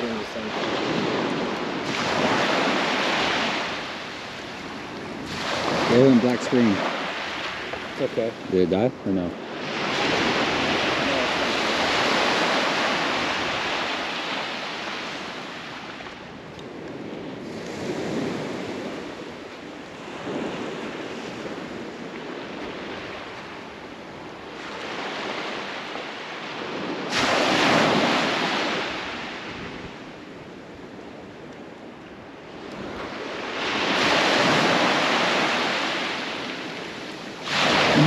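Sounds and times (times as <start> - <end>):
ocean surf breaking on beach: 0.0 - 38.0
big wave breaking loudly: 5.2 - 7.4, 27.1 - 29.3, 37.4 - 38.0.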